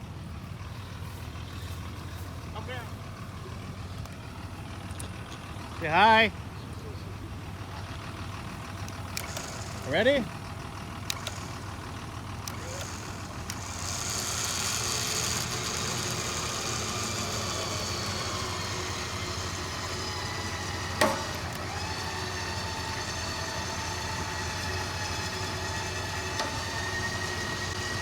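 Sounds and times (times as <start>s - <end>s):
electric winch motor whining: 0.0s - 28.0s
vehicle engine idling: 0.0s - 28.0s
sharp click: 11.0s - 11.7s, 21.0s - 21.7s, 26.4s - 27.4s.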